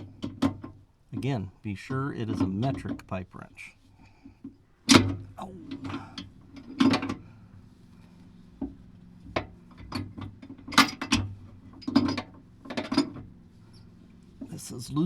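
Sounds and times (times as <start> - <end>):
pipe wrench clanking on metal: 4.4 - 7.3, 8.6 - 14.5.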